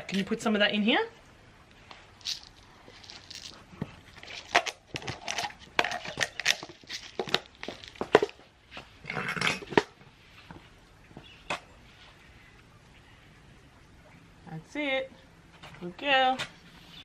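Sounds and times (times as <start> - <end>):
scraping rustle of soil: 1.7 - 4.7
garden pots clattering: 2.1 - 11.7.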